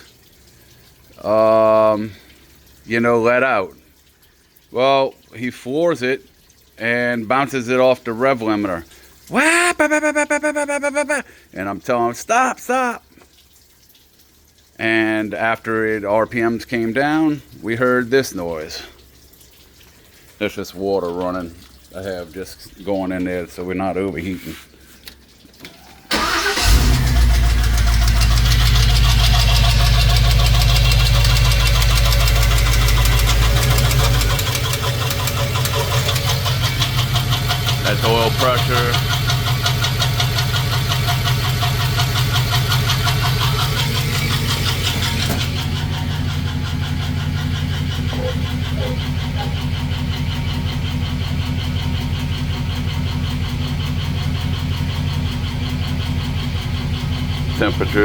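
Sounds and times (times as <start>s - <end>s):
car engine idling with knocking: 26.6s - 58.0s.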